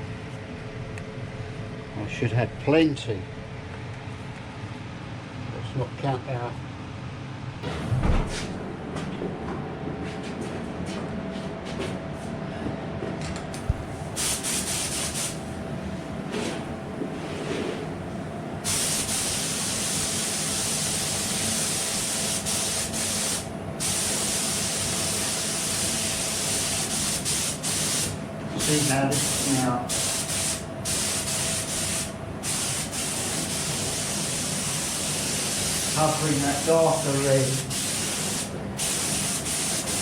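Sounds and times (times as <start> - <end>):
steady hum: 13.6 - 40.0
spray gun hissing: 13.7 - 15.4, 18.6 - 40.0.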